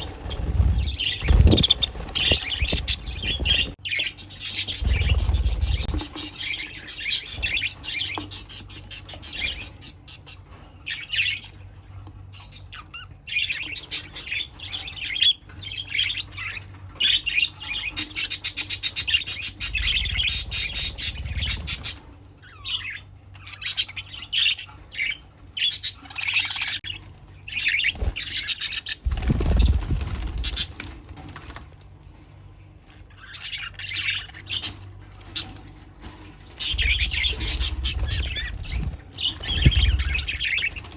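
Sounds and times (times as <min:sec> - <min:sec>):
budgerigars chattering and chirping: 0:00.0 - 0:11.6, 0:12.3 - 0:26.9, 0:36.4 - 0:40.9.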